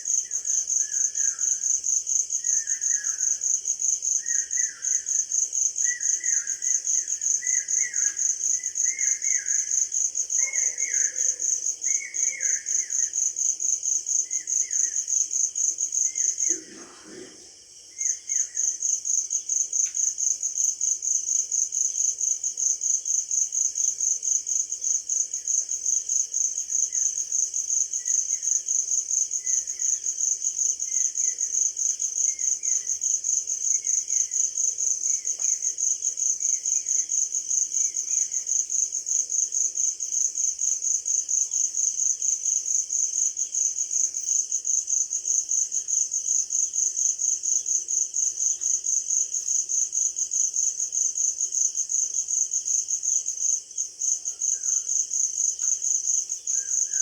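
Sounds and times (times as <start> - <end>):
cricket chirping: 0.0 - 57.0.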